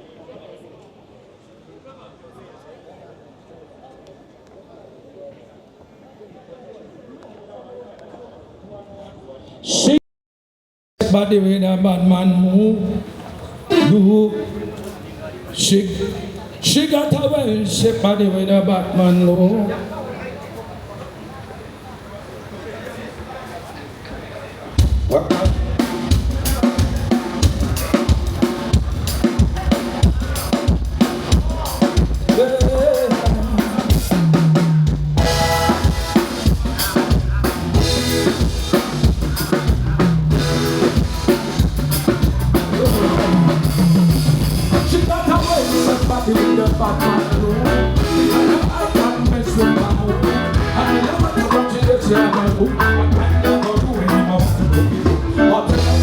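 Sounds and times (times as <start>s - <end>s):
drum kit groove: 13.7s - 14.0s, 24.8s - 56.0s
live band playing: 13.7s - 15.0s, 24.8s - 56.0s
bass: 24.8s - 56.0s.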